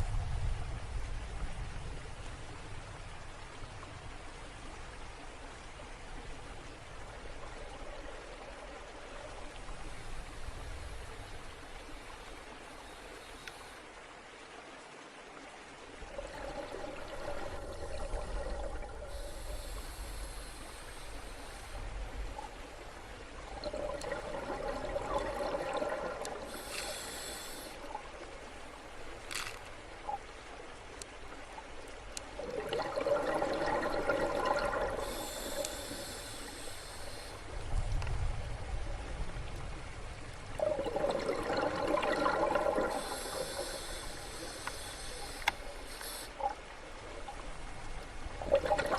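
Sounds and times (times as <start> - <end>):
underwater bubbling: 6.0 - 13.8, 15.9 - 48.9
short hiss: 26.5 - 27.8, 35.0 - 37.4, 42.9 - 46.5.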